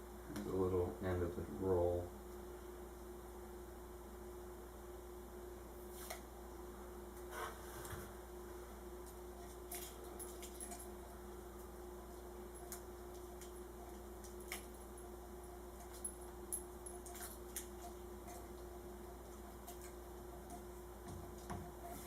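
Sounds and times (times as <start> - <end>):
faint electrical hum: 0.0 - 22.0.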